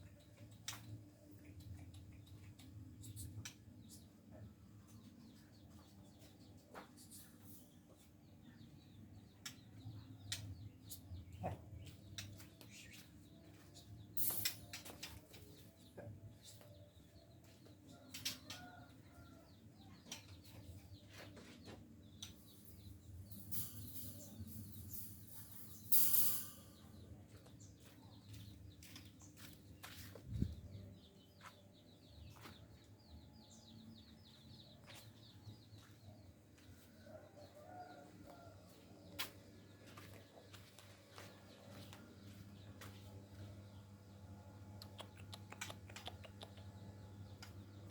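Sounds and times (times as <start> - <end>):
clicks of bird landing on wire: 25.9 - 26.7.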